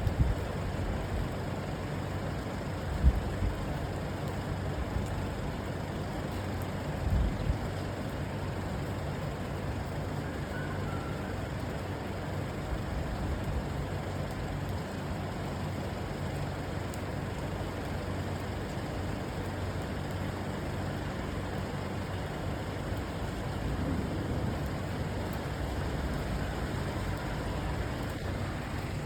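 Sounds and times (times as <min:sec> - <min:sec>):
rain against a window: 0:00.0 - 0:29.0
low steady hum: 0:15.6 - 0:29.0.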